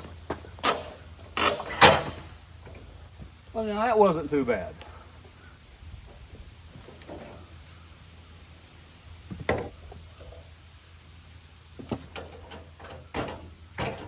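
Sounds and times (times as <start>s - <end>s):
wooden knocks and clunks: 9.3s - 9.8s.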